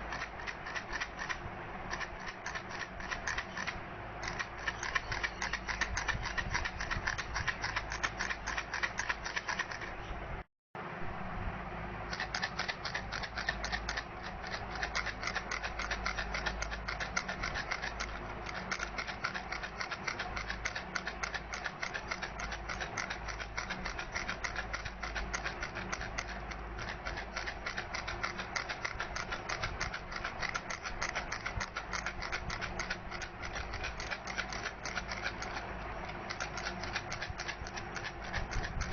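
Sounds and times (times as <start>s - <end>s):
baby rattle shaking: 12.1s - 38.9s.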